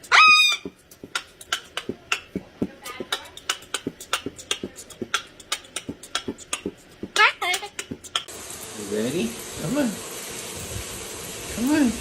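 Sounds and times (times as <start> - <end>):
parrot clicking: 0.1 - 8.3.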